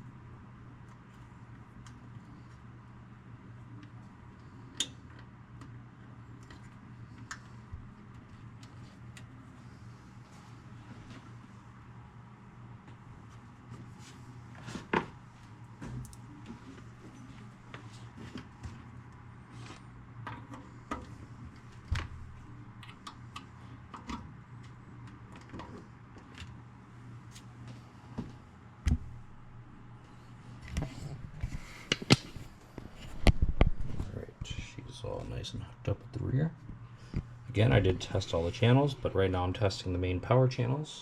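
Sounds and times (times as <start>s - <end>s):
steady low hum: 0.0s - 41.0s
clicks and knocks of handling wire: 3.7s - 9.4s, 15.8s - 26.6s.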